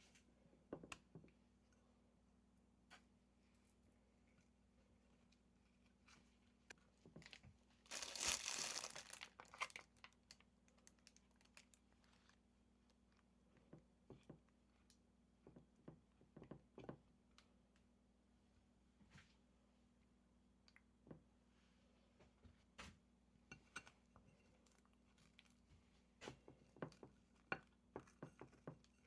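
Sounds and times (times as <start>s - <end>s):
plastic packaging crinkling and tearing: 7.2s - 12.4s.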